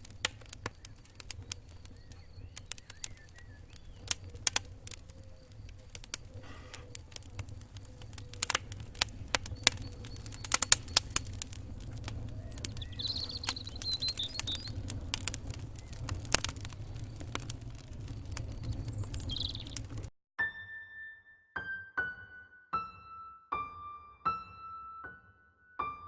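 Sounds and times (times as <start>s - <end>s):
small birds chirping: 0.0s - 20.1s
steady low rumble: 0.0s - 20.1s
bird warbling call: 12.4s - 14.8s, 18.9s - 19.8s.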